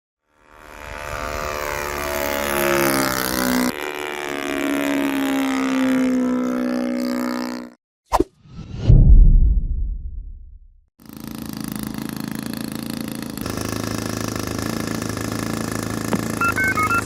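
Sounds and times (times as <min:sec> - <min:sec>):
aircraft engine droning: 0:00.4 - 0:07.7, 0:13.5 - 0:17.0.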